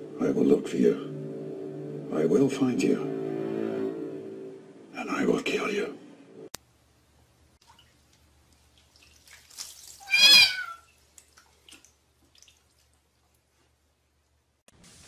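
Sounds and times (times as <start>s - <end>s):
cat meowing: 10.0s - 10.9s.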